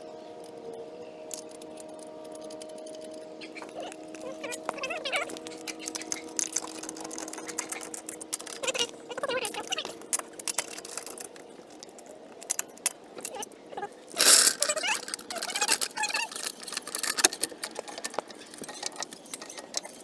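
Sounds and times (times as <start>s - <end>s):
scraping metal clatter: 14.1s - 20.0s
short squeaks: 14.1s - 20.0s.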